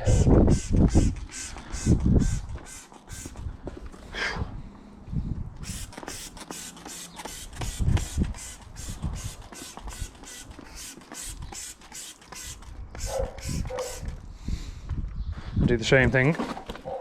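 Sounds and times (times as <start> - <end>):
spray bottle hissing squirts: 0.0 - 3.5, 5.6 - 14.2.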